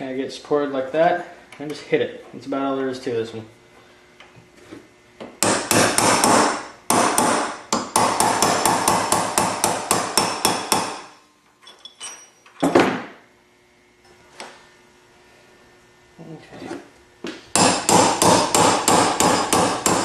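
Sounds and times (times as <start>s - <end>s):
hammer striking metal punch: 5.4s - 11.1s, 17.5s - 20.0s.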